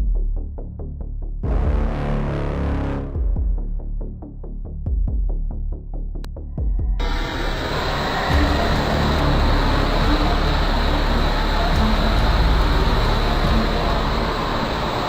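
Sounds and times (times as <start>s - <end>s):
heavy machinery engine rumble: 7.0s - 15.0s.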